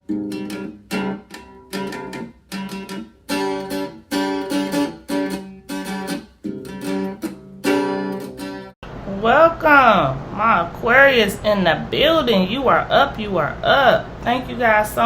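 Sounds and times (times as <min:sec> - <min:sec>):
acoustic guitar chords strummed: 0:00.0 - 0:11.4.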